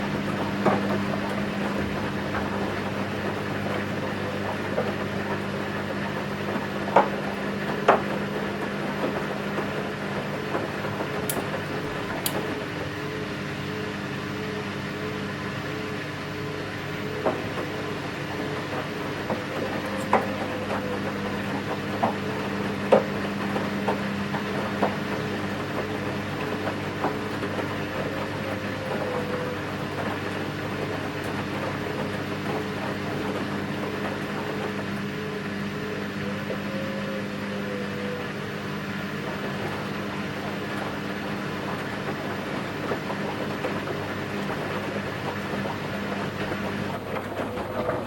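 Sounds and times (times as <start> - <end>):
tumbling load clicks and knocks: 0.0 - 13.1, 17.0 - 35.4
washing machine motor hum: 0.0 - 48.0.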